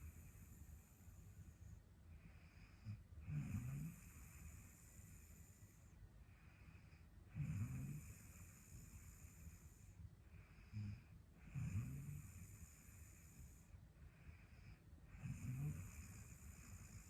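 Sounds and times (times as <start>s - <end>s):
woman snoring: 2.4s - 5.4s, 7.3s - 9.6s, 10.6s - 13.6s, 15.1s - 17.0s.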